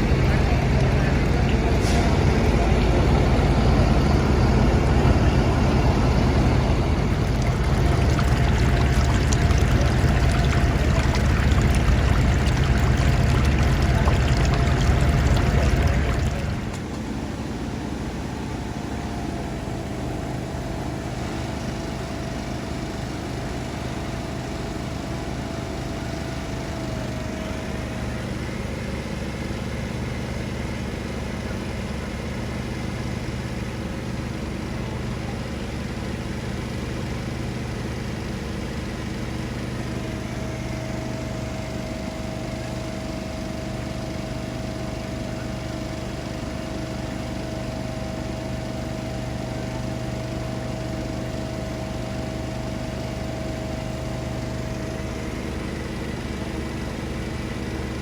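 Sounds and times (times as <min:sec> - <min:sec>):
small engine running: 0:00.0 - 0:29.8.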